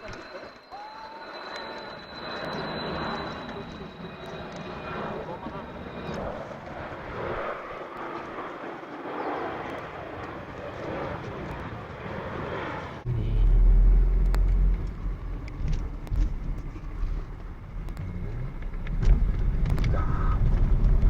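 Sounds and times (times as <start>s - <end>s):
deep rumble: 12.9s - 21.0s
vehicle running: 12.9s - 21.0s.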